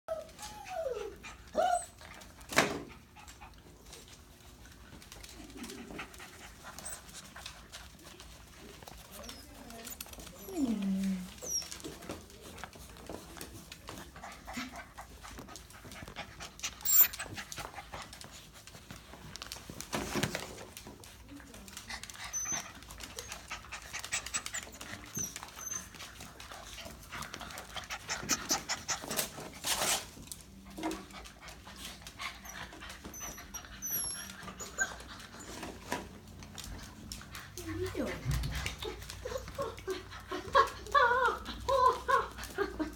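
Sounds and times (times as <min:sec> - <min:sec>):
puppy squeaks: 0:00.1 - 0:02.0, 0:09.2 - 0:12.0, 0:16.8 - 0:17.3, 0:33.0 - 0:35.6
puppies panting: 0:00.1 - 0:42.9
puppies shuffling: 0:00.1 - 0:42.9.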